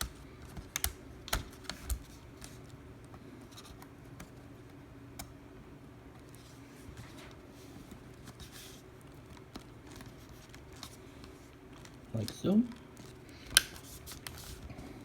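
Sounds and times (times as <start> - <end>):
sharp plastic clicks: 0.0 - 2.1.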